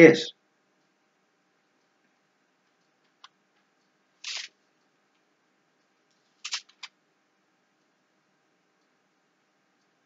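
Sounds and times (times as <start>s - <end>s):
book pages turning: 4.2s - 4.6s, 6.4s - 6.9s.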